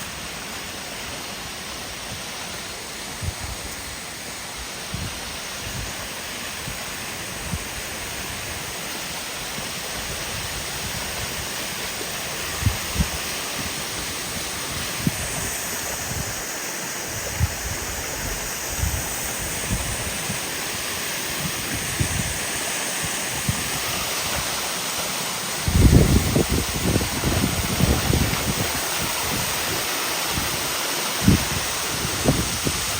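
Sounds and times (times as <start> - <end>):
waterfall rushing: 0.0 - 32.9.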